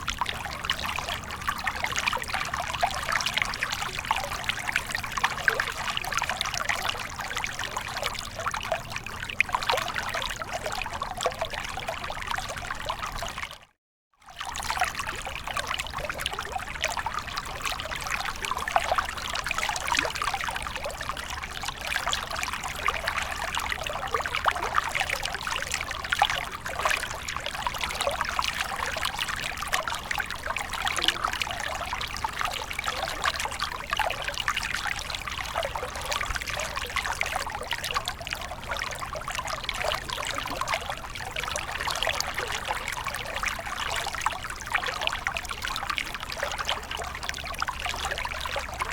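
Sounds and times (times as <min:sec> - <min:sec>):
water trickling and splashing: 0:00.0 - 0:13.7, 0:14.3 - 0:48.9.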